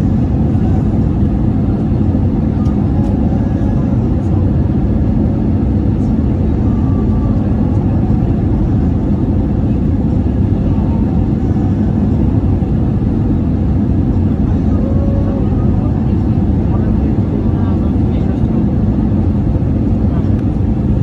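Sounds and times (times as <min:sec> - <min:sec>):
faint constant hum: 0:00.0 - 0:21.0
low rumble of engines and airflow: 0:00.0 - 0:21.0.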